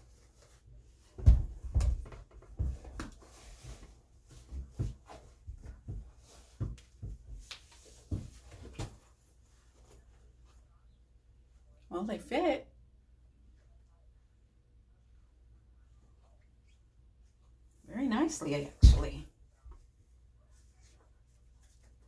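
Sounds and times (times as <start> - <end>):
shoe thumping and rustling: 1.0 - 9.2.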